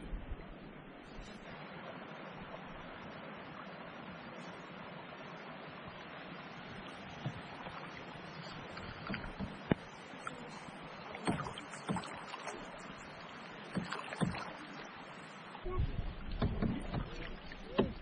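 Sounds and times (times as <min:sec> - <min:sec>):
knocks against canoe: 0:08.8 - 0:09.8, 0:11.2 - 0:12.3, 0:13.7 - 0:14.5, 0:16.2 - 0:18.0.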